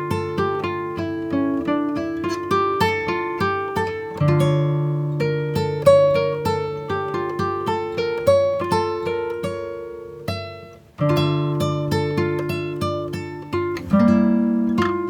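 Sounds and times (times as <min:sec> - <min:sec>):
acoustic guitar picking: 0:00.0 - 0:15.0.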